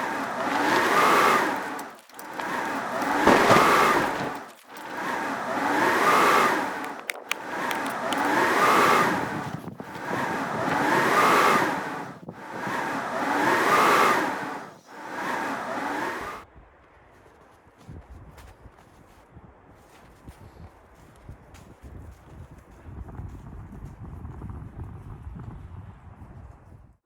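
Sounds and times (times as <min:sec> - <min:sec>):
storm wind howling: 0:00.0 - 0:16.4.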